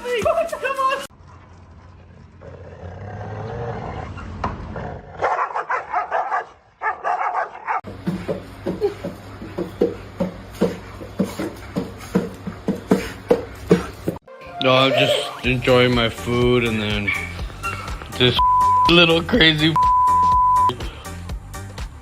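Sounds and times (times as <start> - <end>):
dog barking: 5.2 - 7.8, 17.1 - 17.4
dog whining: 17.1 - 18.0.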